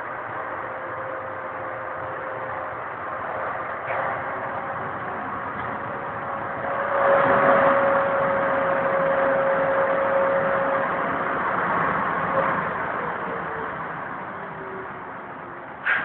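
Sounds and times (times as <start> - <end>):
humming tone: 0.6 - 13.9
sweeping gear rushing whir: 2.0 - 14.2.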